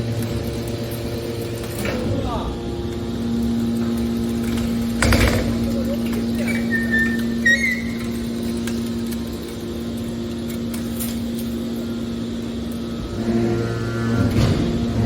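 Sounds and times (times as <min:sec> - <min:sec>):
deeper mechanical hum: 0:00.0 - 0:15.0
hydraulic power unit humming: 0:00.0 - 0:15.0
short high squeaks: 0:06.4 - 0:08.4.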